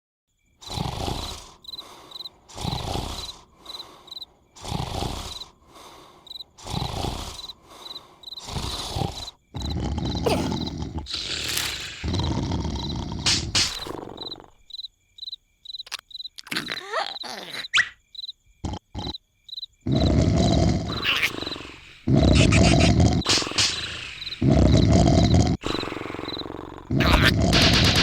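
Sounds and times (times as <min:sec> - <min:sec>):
cricket chirps: 0:00.3 - 0:28.0
cartoon snoring: 0:00.6 - 0:14.7, 0:16.4 - 0:17.8, 0:18.6 - 0:19.2, 0:19.8 - 0:28.0.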